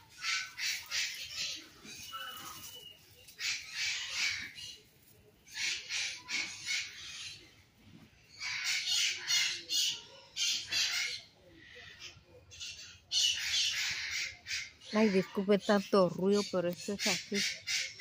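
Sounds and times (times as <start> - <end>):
parrots screeching: 0.1 - 2.6, 3.4 - 4.6.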